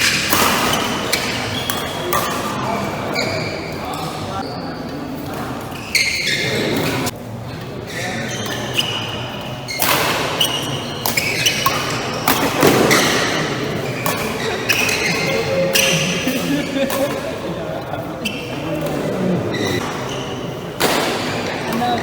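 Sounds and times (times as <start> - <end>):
racket hitting shuttlecock: 0.0 - 2.6, 9.8 - 17.4, 18.3 - 22.0
shoes squeaking on court floor: 0.0 - 7.1, 7.9 - 22.0.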